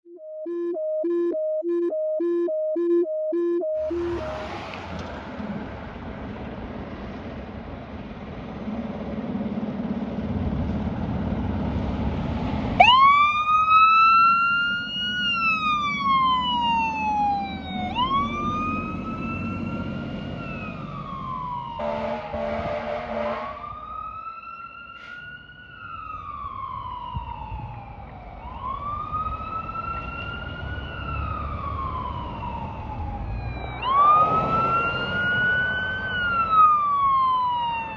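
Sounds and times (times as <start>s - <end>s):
fire engine siren wailing: 0.0s - 5.8s, 11.9s - 37.9s
heavy engines rumbling: 3.8s - 13.5s, 14.1s - 23.7s, 29.6s - 37.9s
air horn blast: 21.8s - 23.6s.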